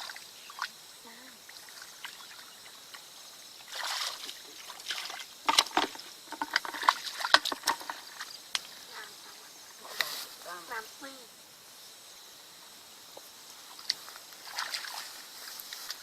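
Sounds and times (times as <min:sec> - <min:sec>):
water sloshing and splashing: 0:01.4 - 0:03.0, 0:03.6 - 0:08.9, 0:13.7 - 0:16.0.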